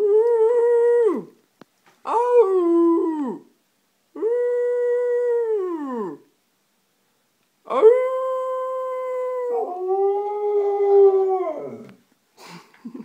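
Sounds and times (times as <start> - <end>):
dog howling: 7.7 - 12.0.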